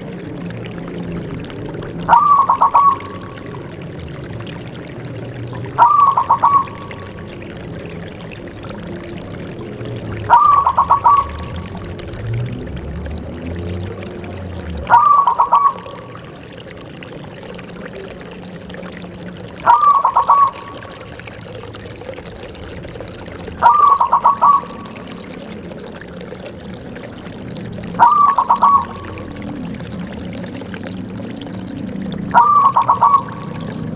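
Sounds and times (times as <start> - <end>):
dove cooing: 2.0 - 3.6, 5.4 - 7.2, 10.3 - 12.0, 14.8 - 16.3, 19.5 - 21.0, 23.4 - 31.4, 32.3 - 33.9.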